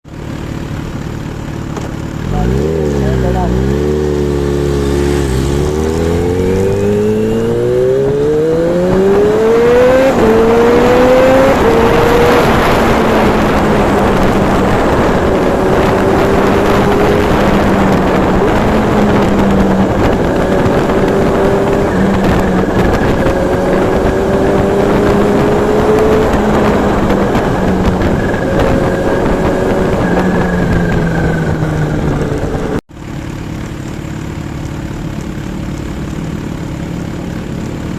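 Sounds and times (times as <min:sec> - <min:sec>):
motorcycle engine accelerating: 0:00.0 - 0:37.9
wind noise on microphone: 0:04.1 - 0:32.8.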